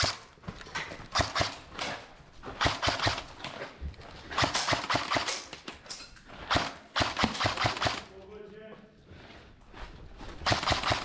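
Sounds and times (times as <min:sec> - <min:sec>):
airsoft guns firing: 0:00.0 - 0:00.4, 0:01.1 - 0:03.6, 0:04.3 - 0:05.7, 0:06.4 - 0:08.2, 0:10.4 - 0:11.0.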